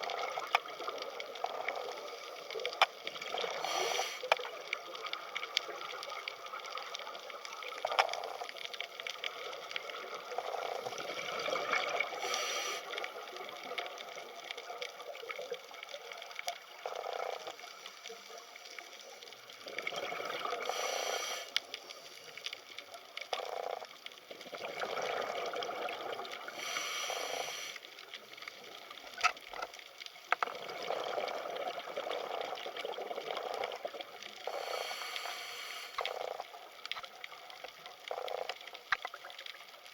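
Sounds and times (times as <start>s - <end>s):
water bubbling and gurgling: 0.0s - 39.9s
underwater hiss: 2.0s - 4.4s, 10.6s - 13.2s, 19.8s - 22.4s, 26.2s - 28.1s, 34.4s - 36.4s.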